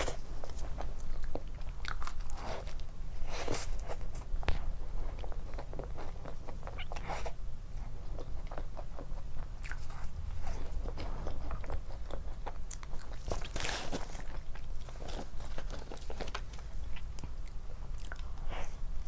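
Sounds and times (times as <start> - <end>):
wet mouth chewing sounds: 0.0 - 4.1, 5.1 - 18.8.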